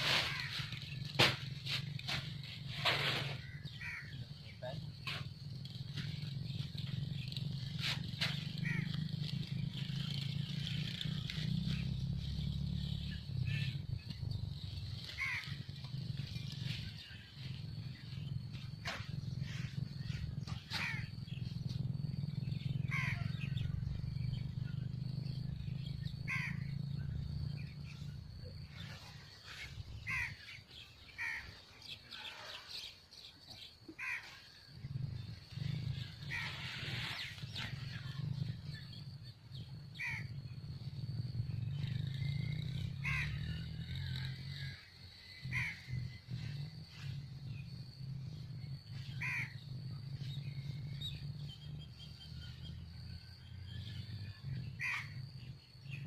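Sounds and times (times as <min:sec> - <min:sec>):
steady low rumble: 0:00.0 - 0:31.3, 0:34.5 - 0:56.0
crow cawing: 0:00.3 - 0:00.7, 0:03.4 - 0:04.2, 0:08.6 - 0:09.0, 0:15.1 - 0:15.6, 0:20.6 - 0:21.1, 0:22.9 - 0:23.4, 0:26.3 - 0:26.7, 0:30.0 - 0:30.5, 0:31.2 - 0:31.6, 0:33.9 - 0:34.4, 0:40.0 - 0:40.3, 0:43.0 - 0:43.8, 0:45.5 - 0:45.9, 0:49.2 - 0:49.6, 0:54.8 - 0:55.2.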